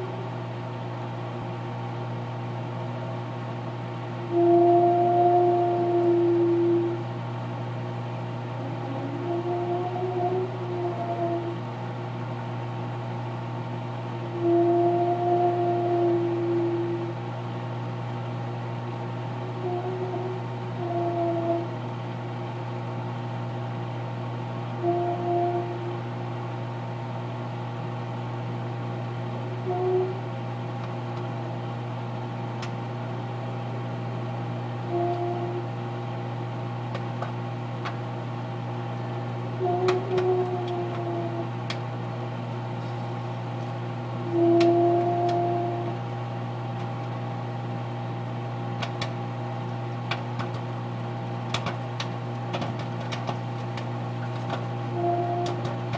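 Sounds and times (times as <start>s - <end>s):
droning tone: 0.0s - 0.4s, 4.2s - 7.2s, 8.4s - 11.8s, 14.1s - 17.2s, 19.3s - 21.9s, 24.7s - 26.2s, 29.4s - 30.3s, 34.2s - 46.3s, 47.3s - 55.9s
microwave oven humming: 0.0s - 55.9s
short hooting tone: 24.8s - 26.0s, 44.3s - 46.0s, 54.9s - 55.7s
popcorn popping: 48.7s - 49.3s, 50.0s - 55.9s.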